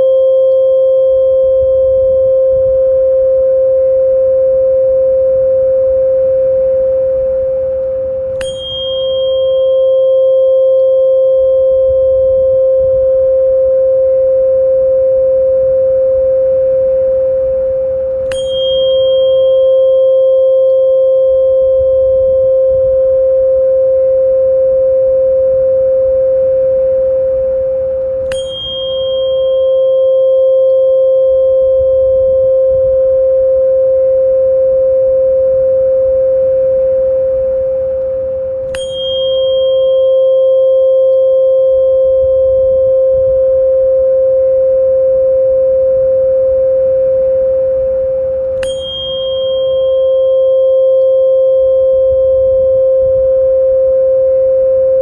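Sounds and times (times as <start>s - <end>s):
steady pure tone: 0.0s - 55.0s
bell-like strike ringing: 8.3s - 12.2s, 18.1s - 22.4s, 28.1s - 32.4s, 38.6s - 42.7s, 47.6s - 53.2s
faint low rumble: 9.1s - 38.8s, 39.4s - 48.6s, 49.3s - 55.0s.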